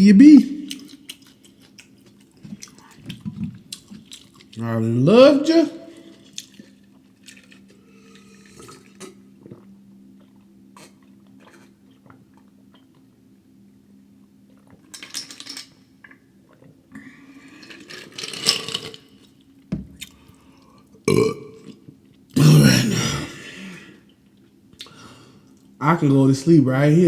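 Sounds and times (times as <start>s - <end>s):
faint steady hum: 0.0s - 27.0s
mouth eating sounds: 0.3s - 5.0s, 5.8s - 13.1s, 20.0s - 25.8s.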